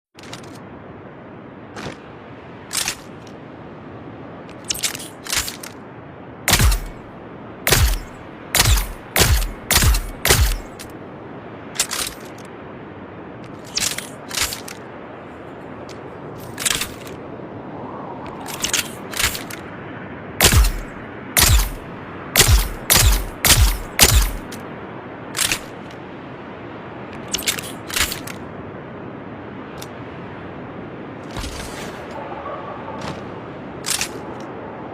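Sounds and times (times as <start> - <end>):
dart rifle shots: 6.5 - 7.0, 7.7 - 10.8, 20.4 - 21.8, 22.4 - 24.5
dart rifle shot: 20.4 - 21.8.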